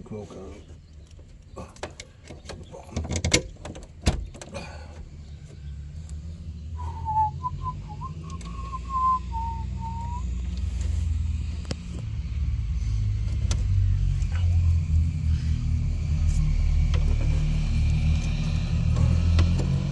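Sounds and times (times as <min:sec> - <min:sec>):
steady low rumble: 0:04.6 - 0:19.9
person whistling a tune: 0:06.8 - 0:10.3
sharp clicks: 0:08.2 - 0:08.8.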